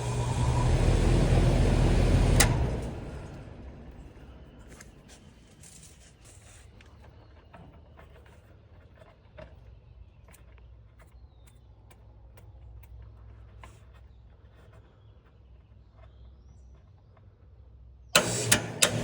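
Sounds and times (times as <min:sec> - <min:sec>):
air conditioner unit humming: 0:00.0 - 0:06.6, 0:18.2 - 0:19.0.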